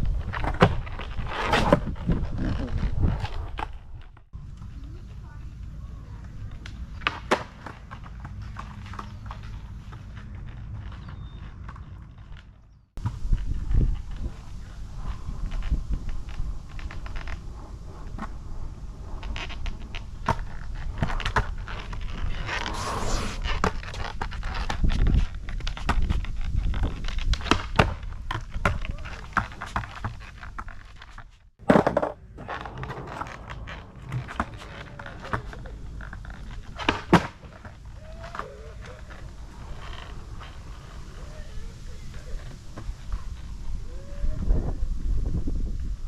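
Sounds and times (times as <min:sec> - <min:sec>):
skateboard wheels rolling on pavement: 0:00.0 - 0:46.0
skateboard clacks and knocks: 0:31.6 - 0:35.9.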